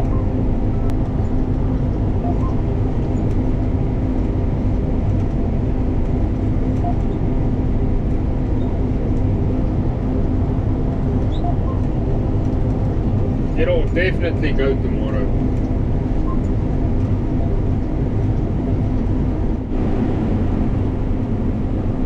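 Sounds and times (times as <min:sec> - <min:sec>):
combine harvester engine drone: 0:00.0 - 0:22.0.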